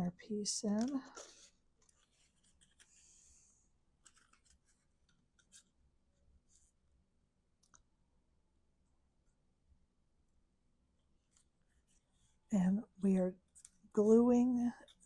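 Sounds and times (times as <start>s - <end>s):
soft sliding hiss: 0.6s - 5.7s
cardstock rustling: 4.0s - 5.7s.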